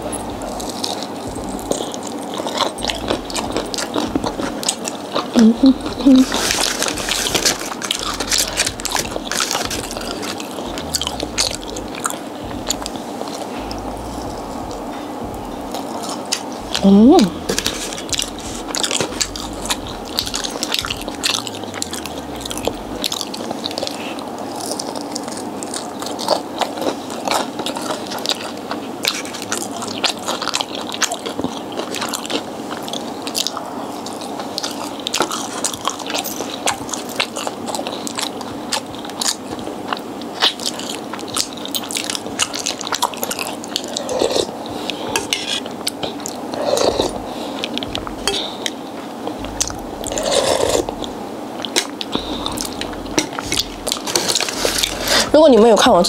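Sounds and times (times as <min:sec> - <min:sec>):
wet mouth clicks: 0:00.0 - 0:24.0, 0:49.4 - 0:55.4
crunching fried chicken: 0:06.0 - 0:15.0, 0:17.4 - 0:55.4.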